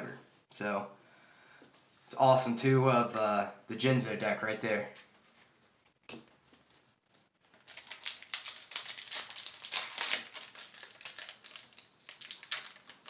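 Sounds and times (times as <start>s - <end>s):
foil wrapper crinkling and tearing: 7.4s - 13.0s.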